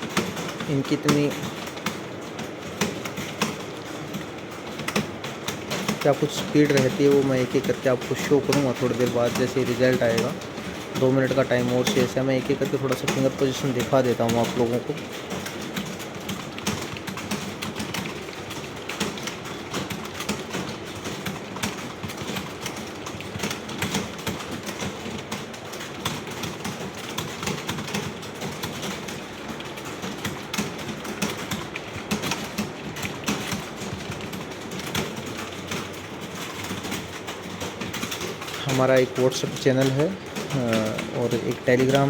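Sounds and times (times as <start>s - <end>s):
many keyboards typing: 0.0s - 42.0s.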